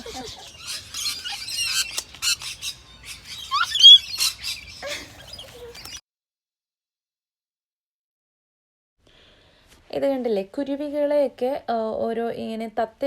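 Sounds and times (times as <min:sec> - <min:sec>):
birds chirping: 0:00.0 - 0:06.0.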